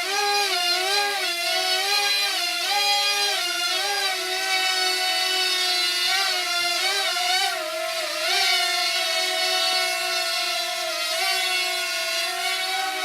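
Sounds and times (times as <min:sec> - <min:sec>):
drone motors whining: 0:00.0 - 0:13.0.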